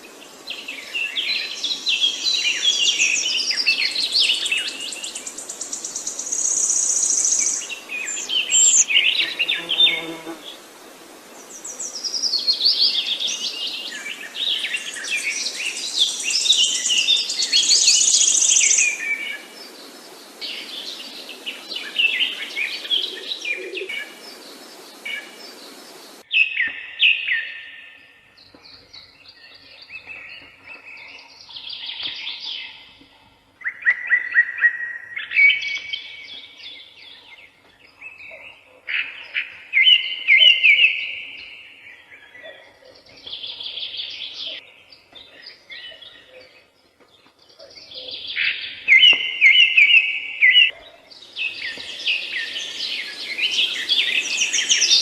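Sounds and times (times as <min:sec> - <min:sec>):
songbirds chirping and singing: 0:00.0 - 0:10.4, 0:11.4 - 0:55.0
steady background hiss: 0:00.0 - 0:26.3, 0:51.1 - 0:55.0.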